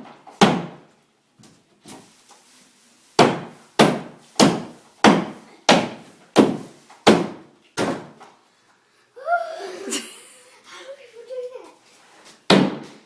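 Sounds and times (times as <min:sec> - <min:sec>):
hammer striking wall: 0:00.0 - 0:00.9, 0:03.2 - 0:08.2, 0:12.5 - 0:13.0.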